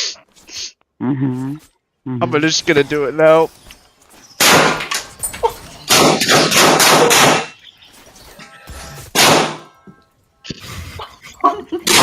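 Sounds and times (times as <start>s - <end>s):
loud gunshots: 4.4s - 4.9s, 5.8s - 7.6s, 9.1s - 9.8s.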